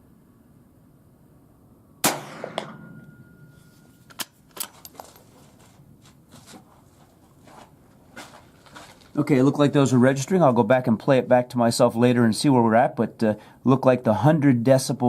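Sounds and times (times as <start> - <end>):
rifle shot: 2.0 - 3.2
steady tone: 2.2 - 4.1.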